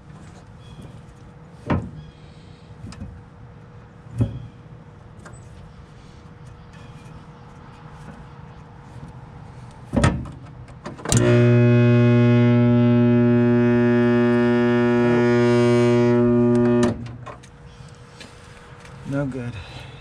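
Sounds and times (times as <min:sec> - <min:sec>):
electric motor humming loudly: 0:11.1 - 0:17.2.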